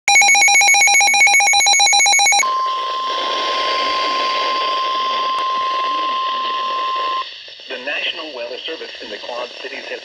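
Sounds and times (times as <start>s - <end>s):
pulsing ringing electronic tone: 0.1s - 7.3s
radio hiss: 2.5s - 10.0s.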